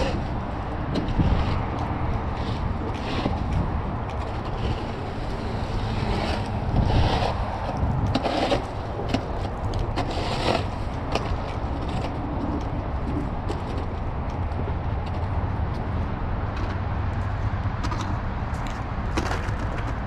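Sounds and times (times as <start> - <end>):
traffic rumble: 0.0 - 20.0
short scrapes and clicks: 0.9 - 13.8.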